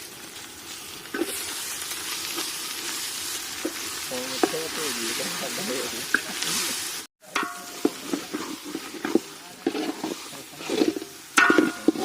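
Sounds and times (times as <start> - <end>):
food sizzling in oil: 0.0 - 12.0
spatula scraping a pan: 3.6 - 12.0.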